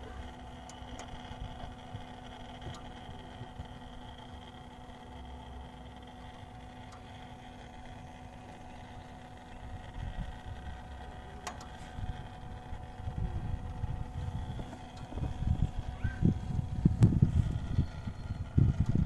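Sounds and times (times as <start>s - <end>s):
mechanical grinding hum: 0.0s - 19.0s.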